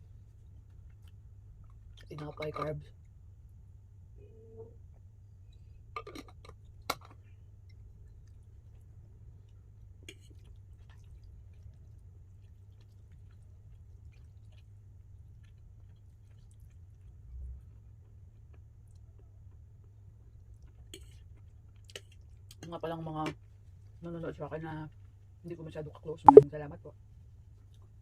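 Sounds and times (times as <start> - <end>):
person quietly chewing: 5.5 - 22.7
low steady hum: 26.3 - 26.5.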